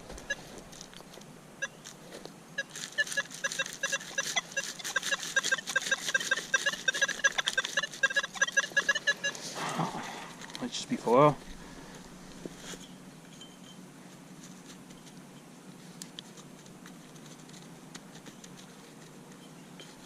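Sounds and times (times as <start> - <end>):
metal detector short beeps: 0.2 - 0.5, 2.6 - 9.4.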